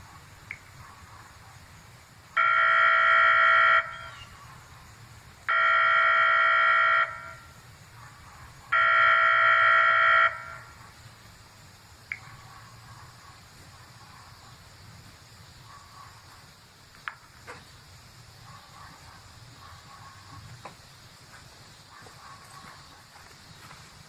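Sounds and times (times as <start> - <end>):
electronic siren buzzing: 2.4 - 4.3, 5.5 - 7.4, 8.7 - 10.7.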